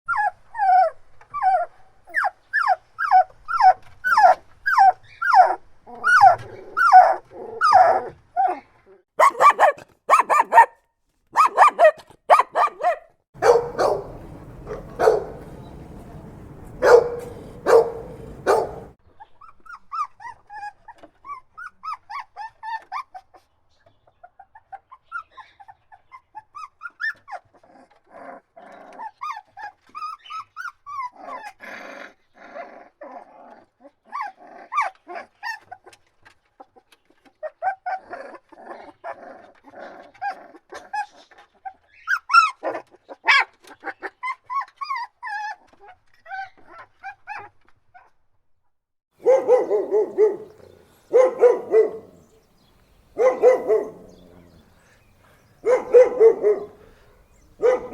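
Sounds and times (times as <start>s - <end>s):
dogs whining and yelping: 0.1s - 8.6s, 11.4s - 23.3s, 24.5s - 31.6s, 32.5s - 36.0s, 37.4s - 48.1s, 49.2s - 52.5s, 53.1s - 55.0s, 55.6s - 57.9s
deep dog barks: 9.2s - 10.8s, 11.4s - 19.0s, 49.2s - 52.4s, 53.1s - 54.8s, 55.6s - 57.9s.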